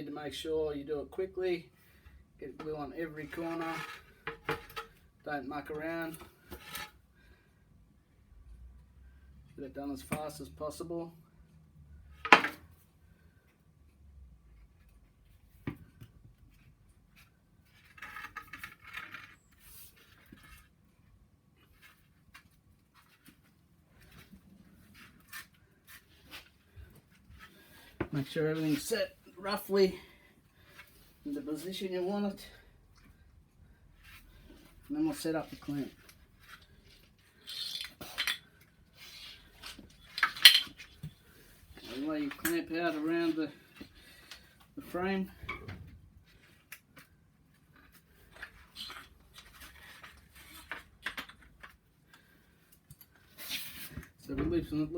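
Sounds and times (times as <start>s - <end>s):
wood scraping against wood: 3.1s - 4.9s, 6.2s - 7.0s.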